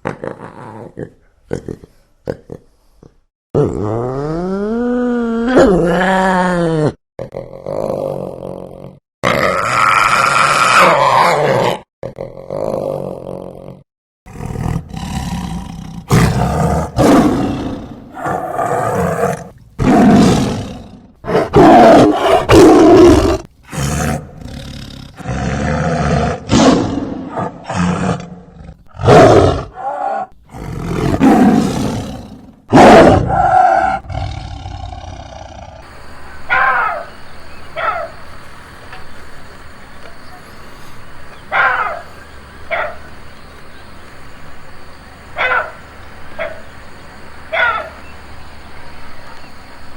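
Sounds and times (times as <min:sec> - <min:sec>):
wild animals roaring and growling: 0:03.6 - 0:35.9.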